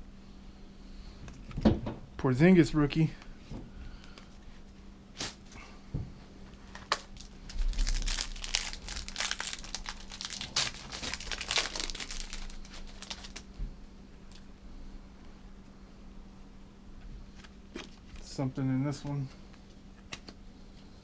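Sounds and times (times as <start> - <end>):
plastic wrapper tearing and crinkling: 6.6 - 13.5.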